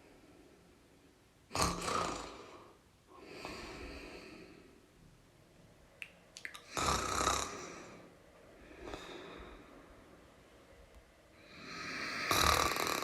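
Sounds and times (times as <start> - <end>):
person snoring: 1.5 - 4.4, 6.7 - 8.1, 11.4 - 13.0
soft breath: 2.3 - 5.1, 7.5 - 10.7.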